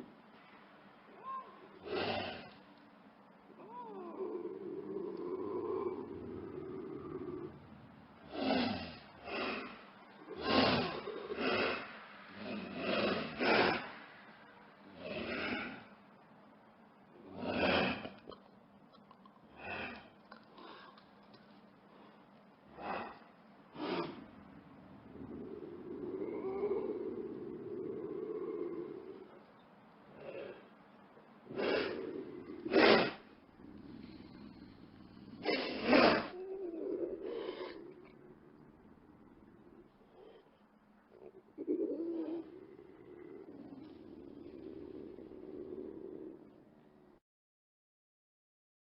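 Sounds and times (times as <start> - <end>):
animal snorts and growls: 1.6 - 2.6, 3.6 - 16.0, 17.1 - 29.5, 30.1 - 30.8, 31.4 - 47.0
breathy animal bursts: 1.7 - 2.6, 8.2 - 16.0, 19.5 - 24.4, 31.4 - 38.2.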